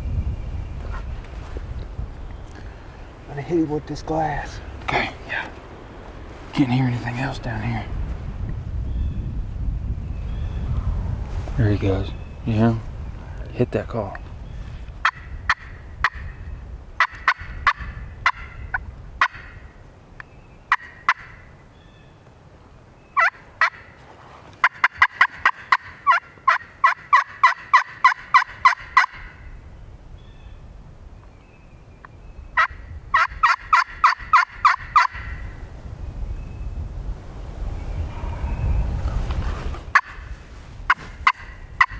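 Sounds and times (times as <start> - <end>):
turkey call yelps: 17.0 - 19.7, 20.7 - 21.5, 23.2 - 23.9, 24.6 - 29.5, 32.6 - 35.5, 39.9 - 40.2, 41.2 - 41.9.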